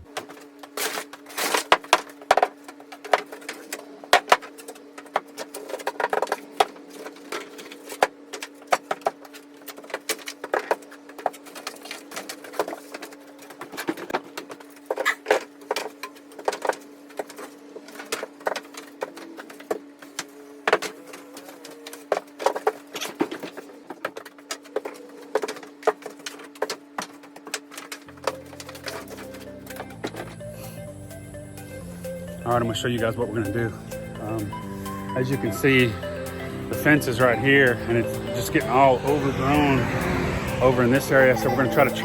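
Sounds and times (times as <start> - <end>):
steady low hum: 28.1 - 42.0.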